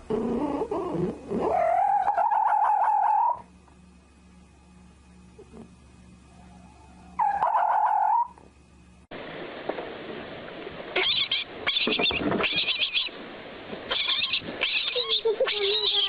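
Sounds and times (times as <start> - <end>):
loud pitched animal call: 0.4 - 3.4, 6.5 - 8.4, 11.0 - 13.1, 13.9 - 16.0
rapid high chirping calls: 13.9 - 15.1.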